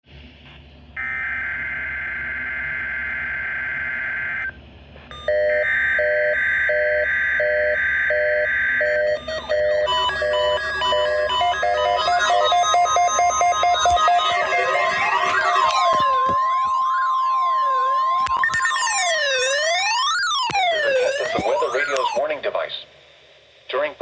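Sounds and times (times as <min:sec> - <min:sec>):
electronic beep melody: 0:05.1 - 0:22.2
steady high alert tone: 0:05.1 - 0:22.3.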